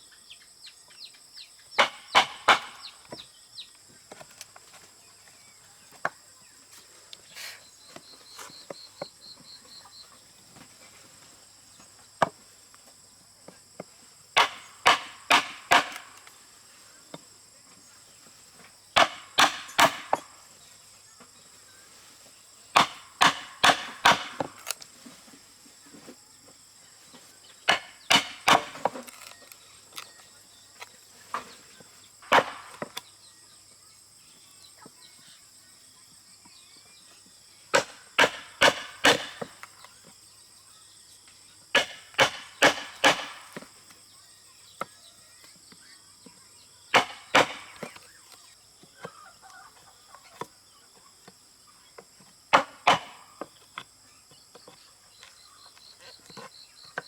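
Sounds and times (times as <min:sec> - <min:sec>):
sharp blows striking wood: 0:01.8 - 0:03.2, 0:13.8 - 0:16.4, 0:18.9 - 0:20.4, 0:22.7 - 0:24.8, 0:27.6 - 0:29.3, 0:32.2 - 0:33.0, 0:37.7 - 0:39.7, 0:41.7 - 0:43.7, 0:46.9 - 0:48.1, 0:52.5 - 0:53.5.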